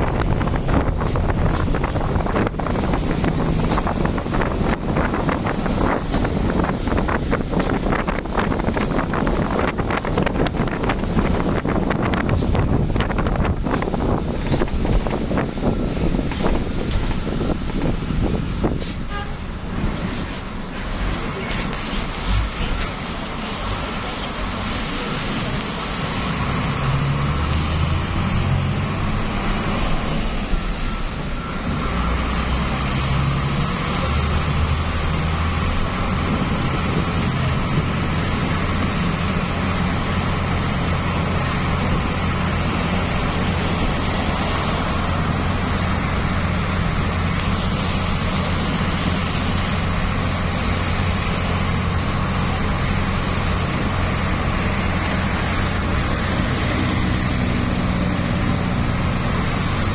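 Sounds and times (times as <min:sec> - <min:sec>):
low engine drone: 0:00.0 - 0:59.9
tyres rushing on road: 0:00.0 - 0:59.9.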